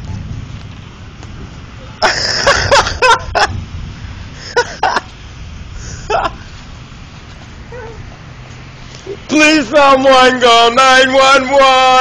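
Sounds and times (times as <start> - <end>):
low rumble: 0.0 - 9.8
person laughing in breathy bursts: 2.0 - 3.7, 4.3 - 5.2, 5.8 - 6.6.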